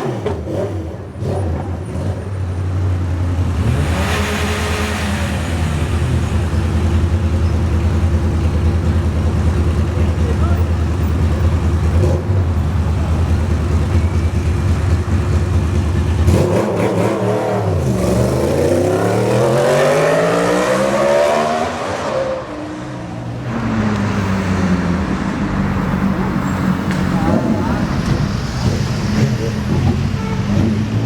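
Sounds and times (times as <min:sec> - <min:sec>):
motorcycle engine revving high: 0:03.3 - 0:31.0
motorcycle engine running steadily: 0:06.0 - 0:16.7, 0:24.9 - 0:31.0.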